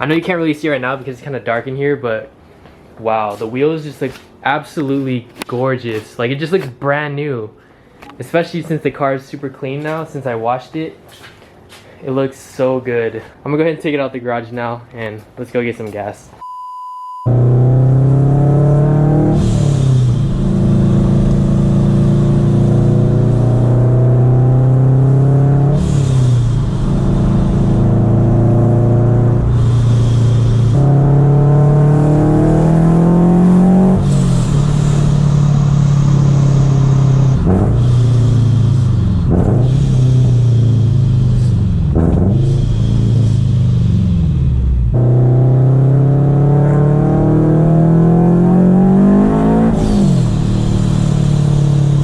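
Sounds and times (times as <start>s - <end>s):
car engine accelerating through gears: 17.2s - 52.0s.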